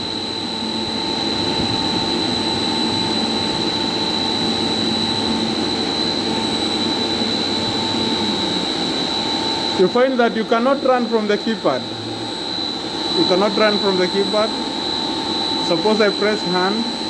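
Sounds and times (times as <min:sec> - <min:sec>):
high-pitched electrical whine: 0:00.0 - 0:17.0
faint high whistle: 0:11.1 - 0:17.0.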